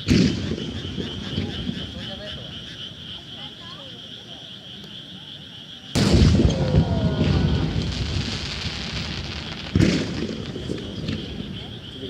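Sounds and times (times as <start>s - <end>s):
firework shells bursting: 6.0s - 11.7s.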